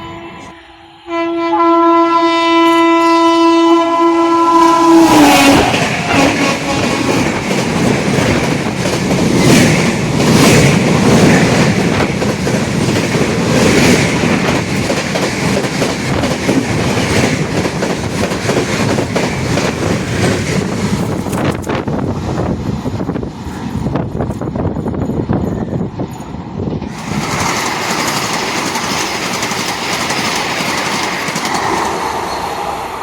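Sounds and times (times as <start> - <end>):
locomotive horn: 0.0 - 7.6
train passing at speed: 0.0 - 33.0.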